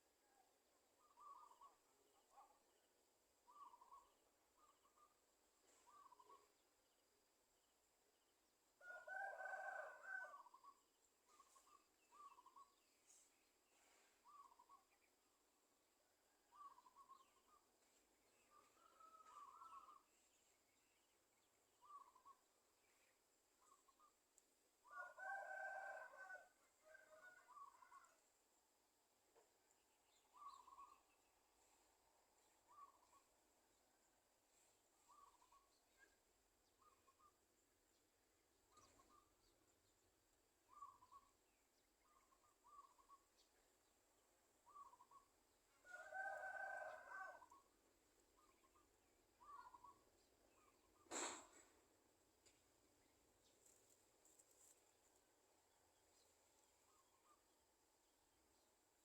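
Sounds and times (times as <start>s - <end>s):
faint bird calls: 0.2s - 2.7s, 3.4s - 6.6s, 10.0s - 15.1s, 16.4s - 20.3s, 21.8s - 24.2s, 30.1s - 33.3s, 34.6s - 37.5s, 38.7s - 39.6s, 40.6s - 41.4s, 42.0s - 43.7s, 44.6s - 47.7s, 48.3s - 51.9s, 56.8s - 57.6s
faint short bird calls: 3.5s - 6.6s, 11.3s - 14.9s, 21.8s - 22.4s, 30.3s - 31.1s, 32.7s - 33.3s, 48.4s - 51.8s.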